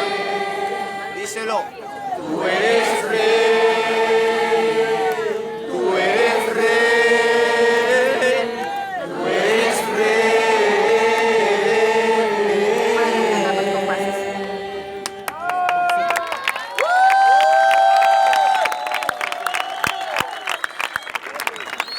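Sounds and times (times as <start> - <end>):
crowd singing in unison: 0.0 - 15.8.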